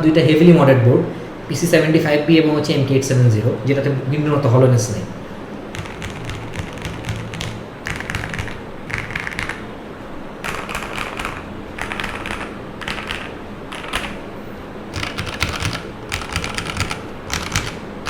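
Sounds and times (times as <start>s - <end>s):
mechanical keyboard typing: 5.7s - 9.7s, 10.4s - 18.0s.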